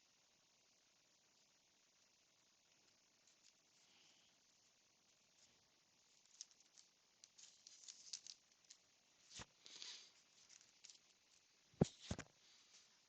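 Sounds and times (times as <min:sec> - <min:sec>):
cards rustling and clicking: 0:05.4 - 0:12.9.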